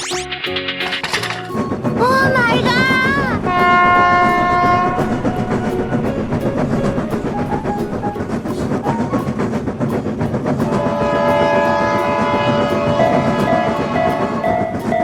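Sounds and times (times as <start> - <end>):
train rumbling on rails: 1.2 - 15.0
wheels clattering over rail joints: 1.2 - 15.0
train horn blasts: 3.4 - 8.0, 10.7 - 15.0.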